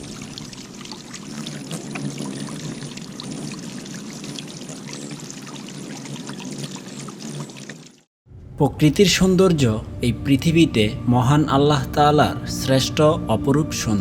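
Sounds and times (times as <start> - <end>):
water running and splashing: 0.0 - 8.1.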